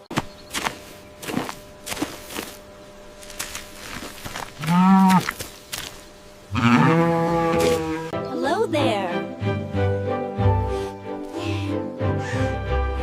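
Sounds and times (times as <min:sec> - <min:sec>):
cow mooing: 0:04.6 - 0:05.3, 0:06.5 - 0:08.2.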